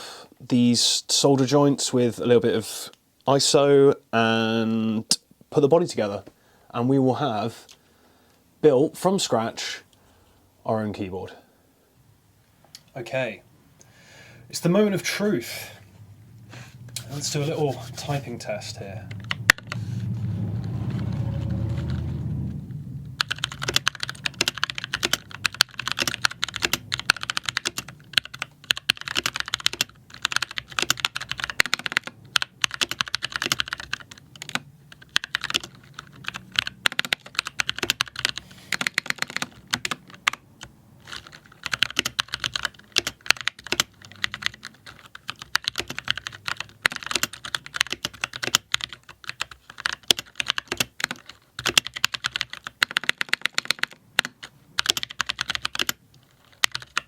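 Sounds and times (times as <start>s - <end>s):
mechanical keyboard key clacks: 41.1s - 56.0s.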